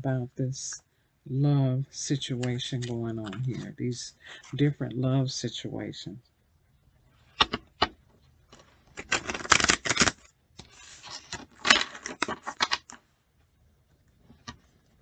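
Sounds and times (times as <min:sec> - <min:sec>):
cards being shuffled: 0:02.4 - 0:03.8, 0:08.5 - 0:13.0.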